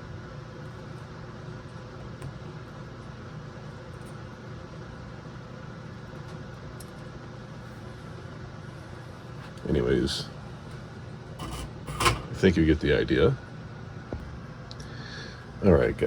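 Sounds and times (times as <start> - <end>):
low background hum: 0.0 - 16.0.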